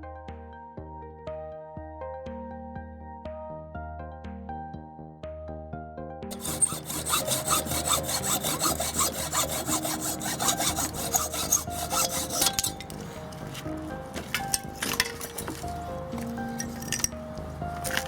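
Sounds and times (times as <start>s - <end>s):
background music: 0.0s - 18.0s
hand saw cutting wood: 6.3s - 17.1s.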